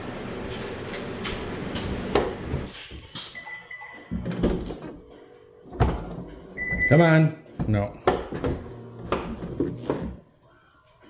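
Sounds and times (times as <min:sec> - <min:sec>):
power hatch motor humming: 0:08.5 - 0:09.8.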